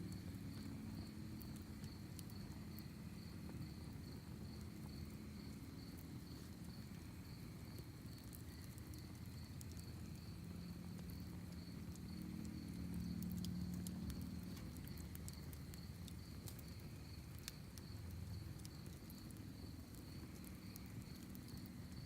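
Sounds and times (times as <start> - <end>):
campfire crackling and popping: 0.0 - 22.0
crickets chirping: 0.0 - 22.0.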